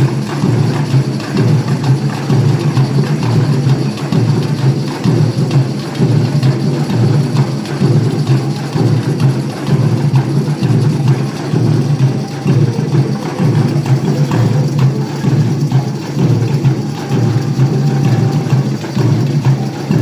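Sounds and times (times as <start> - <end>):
drums and percussion beat: 0.0 - 20.0
band playing: 11.1 - 20.0.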